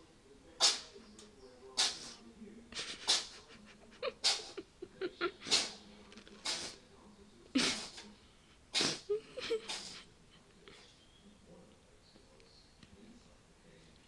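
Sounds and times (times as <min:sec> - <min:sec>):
cat sneezing: 0:00.6 - 0:01.0, 0:01.8 - 0:02.2, 0:02.8 - 0:04.7, 0:05.3 - 0:05.8, 0:06.4 - 0:06.8, 0:07.6 - 0:08.1, 0:08.7 - 0:10.1.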